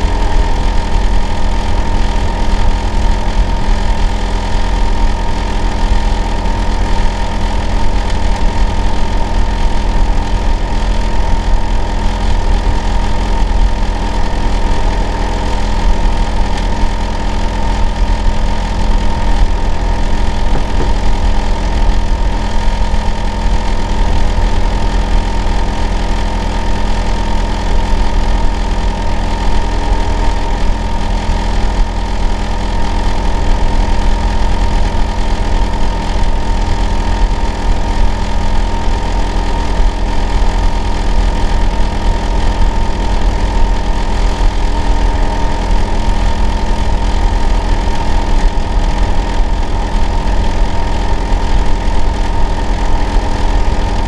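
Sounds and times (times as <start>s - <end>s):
air conditioner unit humming: 16.2s - 23.6s.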